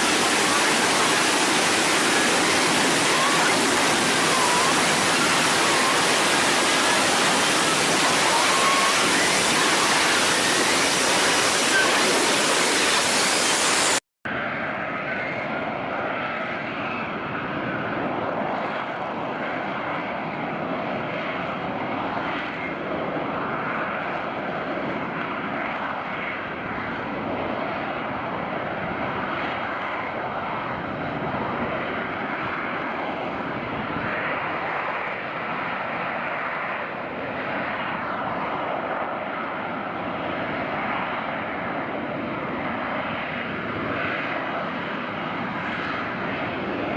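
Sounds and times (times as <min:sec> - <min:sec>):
loud rushing hiss: 0:00.0 - 0:14.0
aircraft engine running: 0:00.0 - 0:46.9.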